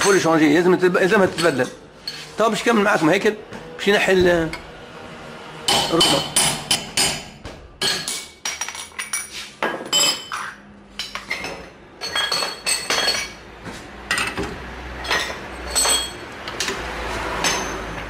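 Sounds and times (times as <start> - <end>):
metal tools clinking and knocking: 0.0 - 2.3, 5.7 - 13.4, 14.1 - 16.8, 17.4 - 18.0.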